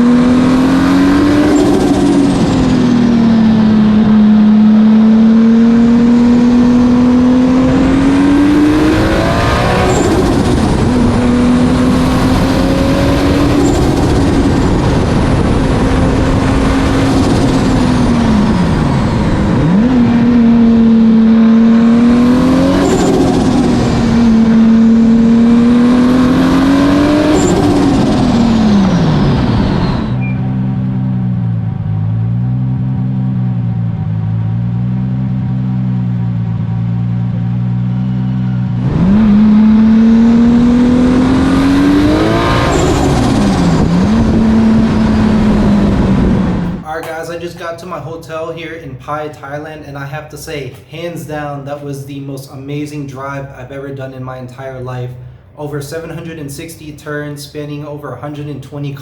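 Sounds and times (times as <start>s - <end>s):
car engine accelerating through gears: 0.0s - 46.9s.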